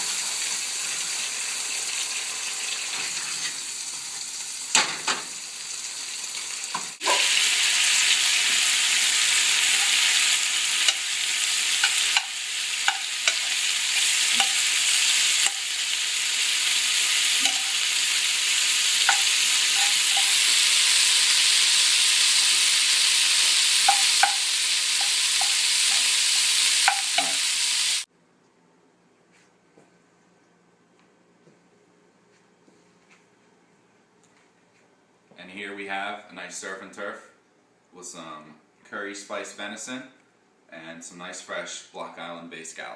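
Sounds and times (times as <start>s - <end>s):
food sizzling in a pan: 0.0s - 28.1s.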